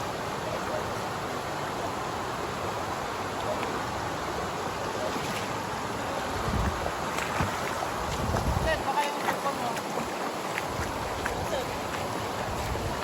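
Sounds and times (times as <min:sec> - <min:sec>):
rushing water at a dam: 0:00.0 - 0:13.0
wind buffeting microphone: 0:06.0 - 0:13.0.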